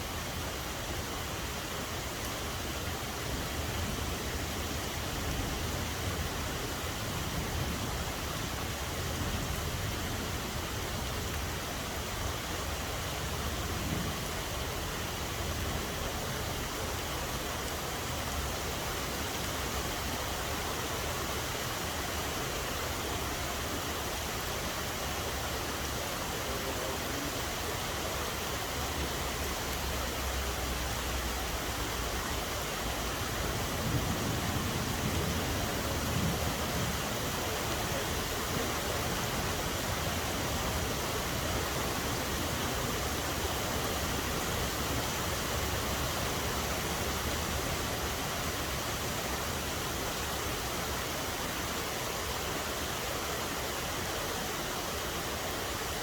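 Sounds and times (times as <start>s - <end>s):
rain hissing: 0.0s - 56.0s.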